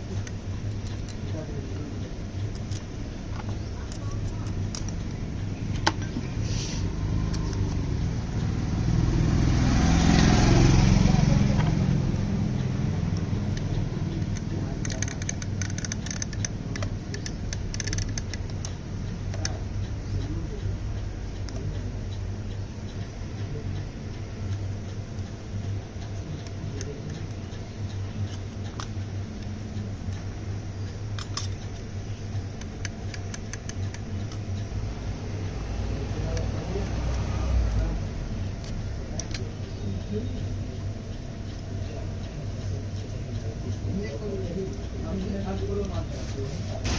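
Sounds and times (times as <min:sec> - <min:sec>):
motorcycle engine revving: 0:06.2 - 0:16.4.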